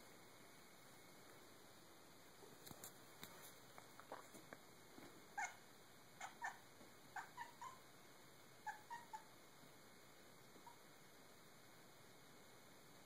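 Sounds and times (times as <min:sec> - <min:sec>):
cat chirping calls: 0:06.2 - 0:07.8, 0:08.6 - 0:09.3.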